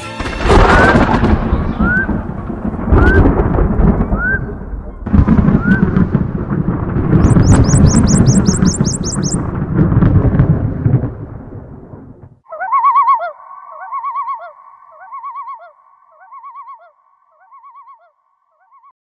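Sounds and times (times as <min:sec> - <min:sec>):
warbling bird-like call: 0:01.8 - 0:02.2, 0:02.9 - 0:03.3, 0:04.0 - 0:04.6, 0:05.5 - 0:06.0, 0:07.1 - 0:09.5, 0:12.5 - 0:18.9.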